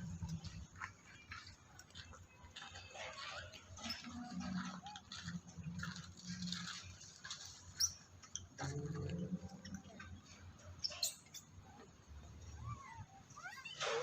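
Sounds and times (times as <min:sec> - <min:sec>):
small clicks and patters: 0:00.0 - 0:14.0
baby monkey squeaks: 0:12.5 - 0:14.0.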